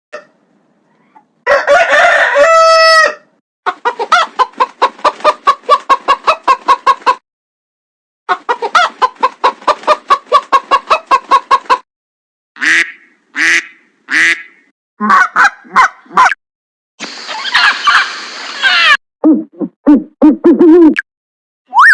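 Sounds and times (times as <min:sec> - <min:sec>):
chicken calls: 0:00.2 - 0:07.2, 0:08.3 - 0:11.8, 0:12.6 - 0:16.3, 0:17.3 - 0:19.0.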